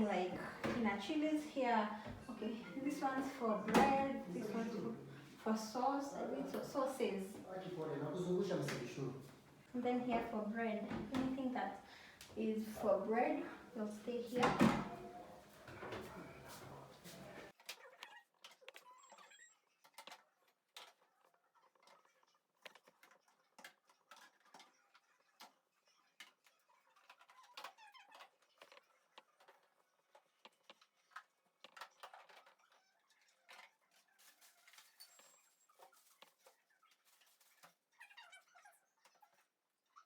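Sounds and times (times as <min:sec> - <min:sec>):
containers clicking on fridge shelves: 0:14.2 - 0:16.1.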